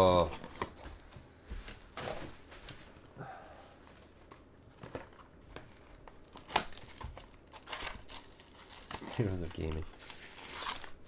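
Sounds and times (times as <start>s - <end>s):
wrappers and cards rustling: 3.8s - 11.0s.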